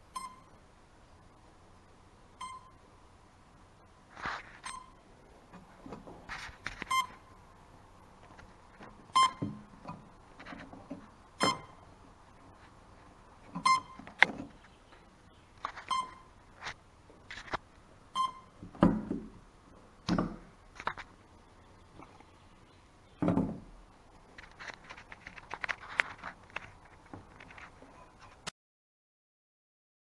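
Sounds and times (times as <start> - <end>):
short electronic beeps: 0.1 - 0.6, 2.4 - 2.8, 4.6 - 5.0, 6.9 - 7.2, 9.1 - 9.5, 11.4 - 11.8, 13.6 - 14.0, 15.8 - 16.3, 18.2 - 18.6.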